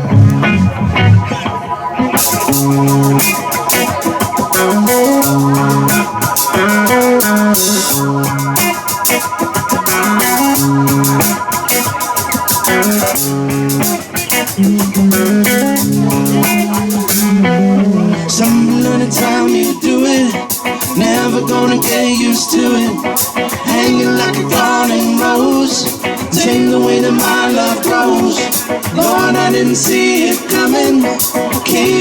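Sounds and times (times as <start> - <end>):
bass guitar: 0.0 - 32.0
electric guitar: 0.0 - 32.0
keyboards: 0.0 - 32.0
drum kit: 2.1 - 17.5.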